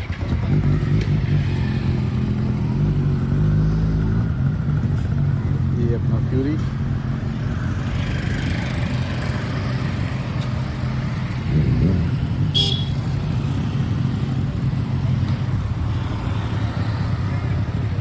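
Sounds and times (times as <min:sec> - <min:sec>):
motorcycle engines idling: 0:00.0 - 0:18.0.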